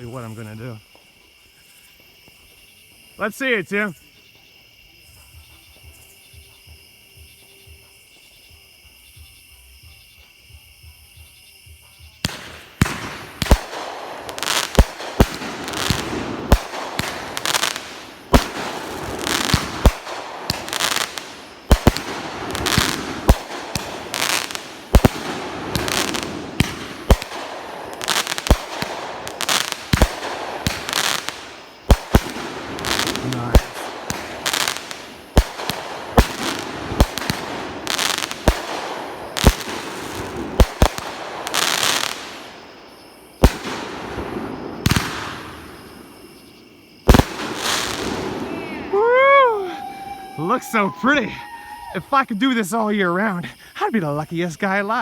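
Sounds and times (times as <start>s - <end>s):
insects chirring: 0.0s - 55.0s
firework bangs: 12.2s - 51.9s
firework crackle: 12.2s - 51.9s.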